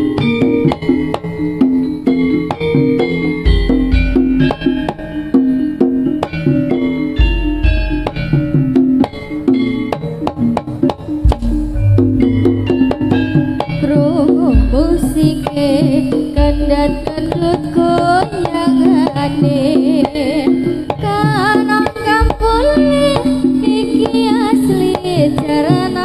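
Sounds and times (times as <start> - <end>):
hand drum strokes: 0.0 - 26.0
ringing metallophone notes: 0.0 - 26.0
person singing with vibrato: 13.2 - 26.0.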